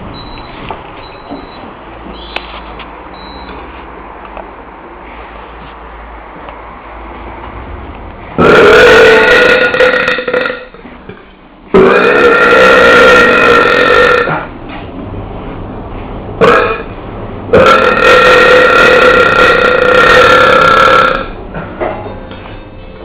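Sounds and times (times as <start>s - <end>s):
person belching loudly: 8.4s - 10.8s, 11.8s - 14.5s, 16.4s - 16.8s, 17.5s - 21.3s.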